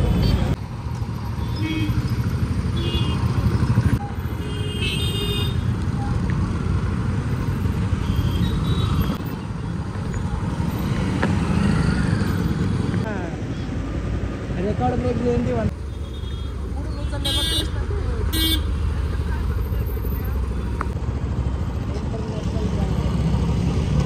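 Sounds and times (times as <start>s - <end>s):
motorcycle engine: 0.0s - 13.0s
traffic rumble: 0.0s - 24.0s.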